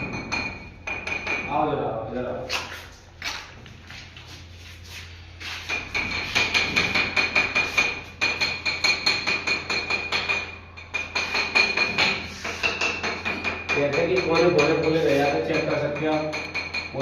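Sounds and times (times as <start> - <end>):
tapping on wall tiles: 5.7 - 17.0.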